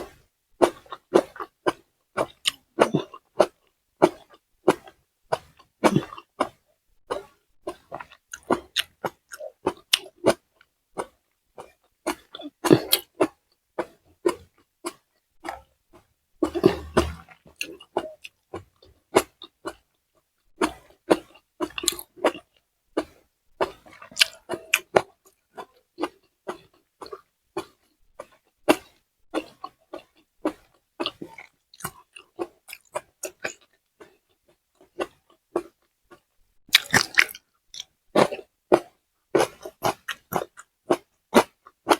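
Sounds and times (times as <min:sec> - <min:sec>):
person chewing food: 0:00.0 - 0:41.9
wet mouth clicks and smacks: 0:00.6 - 0:10.4, 0:20.6 - 0:34.2, 0:34.8 - 0:41.9.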